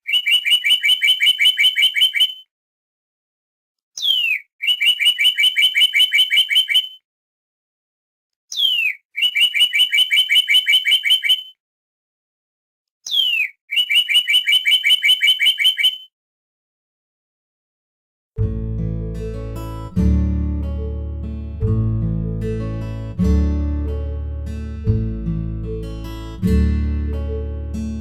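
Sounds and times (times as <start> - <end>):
bird singing whistled phrases: 0.0 - 2.5, 4.0 - 7.0, 8.5 - 11.6, 13.0 - 16.1.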